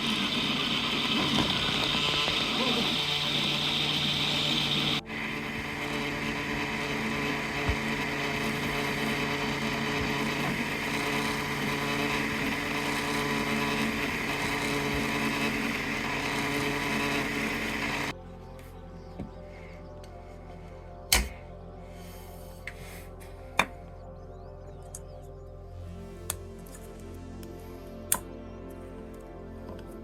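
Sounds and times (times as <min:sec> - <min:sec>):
printer motors and fans humming: 0:00.0 - 0:18.1.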